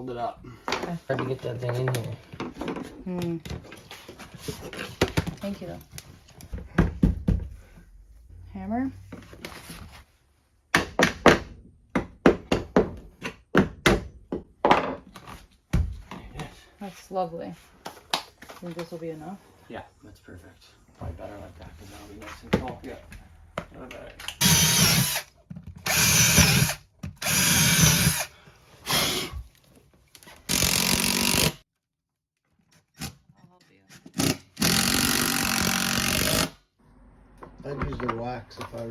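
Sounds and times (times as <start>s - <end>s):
hammer knocking wood shims: 10.7s - 15.1s
power drill running: 24.3s - 29.4s, 30.5s - 31.6s, 34.2s - 36.5s.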